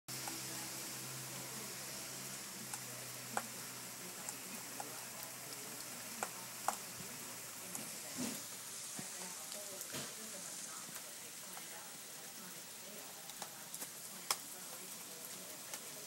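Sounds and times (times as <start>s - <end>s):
rain hissing: 0.1s - 16.0s
raindrops ticking close by: 2.6s - 7.9s, 13.2s - 16.0s.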